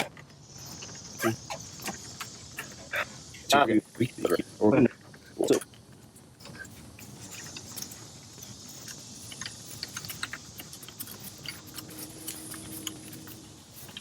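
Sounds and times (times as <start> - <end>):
faint steady hum: 0.0 - 14.0
steady hiss: 0.0 - 14.0.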